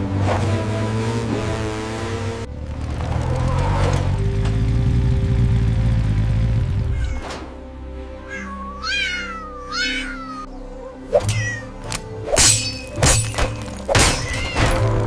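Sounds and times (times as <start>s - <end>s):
bass-heavy background music: 0.0s - 15.0s
cat meowing: 6.9s - 7.2s, 8.2s - 10.6s, 11.2s - 12.0s, 14.1s - 14.8s.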